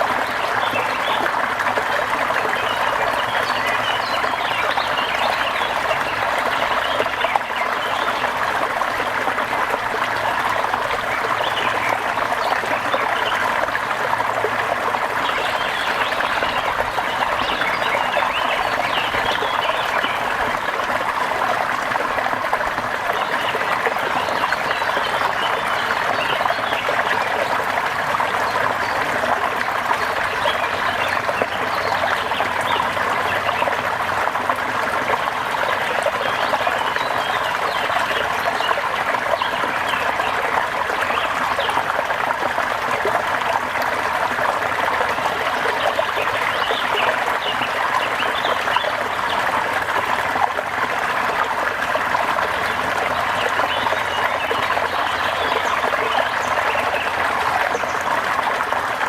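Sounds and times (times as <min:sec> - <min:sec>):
water trickling: 0:00.0 - 0:25.4, 0:37.6 - 0:59.0
small water drips: 0:00.0 - 0:25.6.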